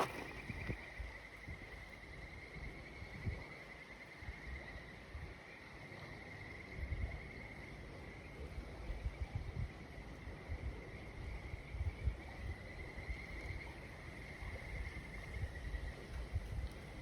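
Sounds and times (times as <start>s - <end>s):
soft low bumps: 0.0s - 0.9s.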